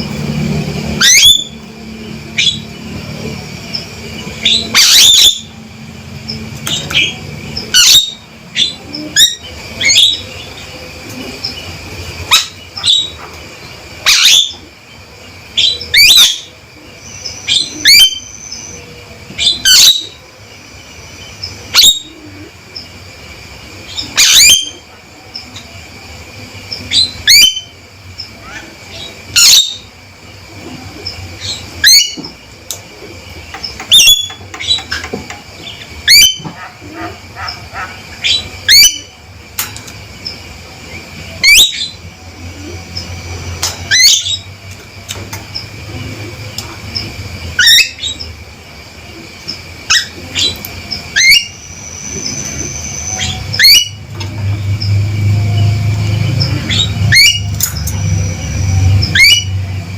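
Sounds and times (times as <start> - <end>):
myna bird calling: 0.0 - 14.9, 30.8 - 39.3, 49.8 - 59.9
low steady hum: 0.0 - 19.4.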